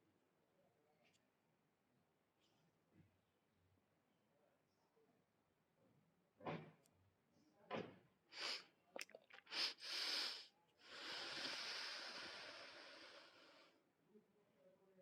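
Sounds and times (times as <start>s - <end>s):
person sniffing and snorting: 8.4s - 13.6s.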